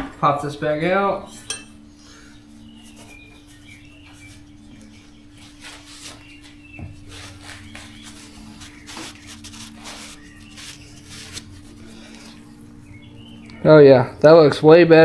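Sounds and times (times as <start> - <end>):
steady low hum: 0.0 - 15.0
rubbing and scuffing of metal valve: 2.8 - 12.2.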